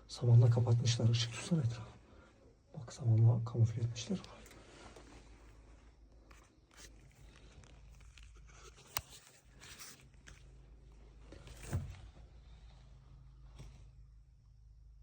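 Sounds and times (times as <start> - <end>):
dull thump: 11.5 - 12.2.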